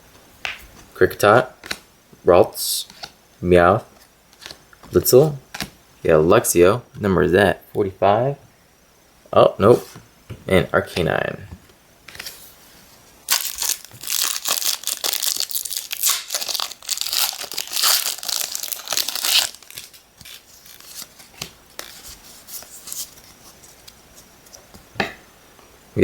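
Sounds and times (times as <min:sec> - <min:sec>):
packaging tearing and crumpling: 0:13.3 - 0:23.4.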